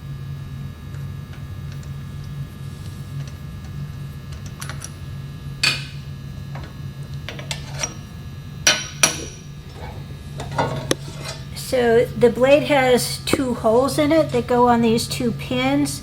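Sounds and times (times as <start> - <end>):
steady low hum: 0.0 - 16.0
metal tools clinking: 7.3 - 8.0, 8.7 - 11.5.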